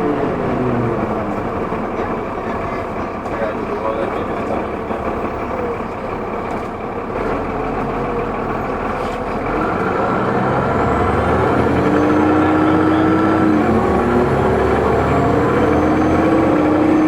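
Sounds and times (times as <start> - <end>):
bus diesel engine running: 0.0 - 17.0
high turbo whine: 9.8 - 17.0.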